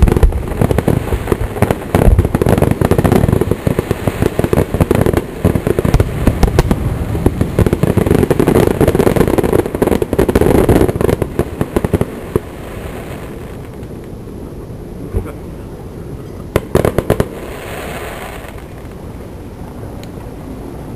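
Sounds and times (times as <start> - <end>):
fireworks bangs and pops: 0.0 - 14.2, 16.5 - 19.0.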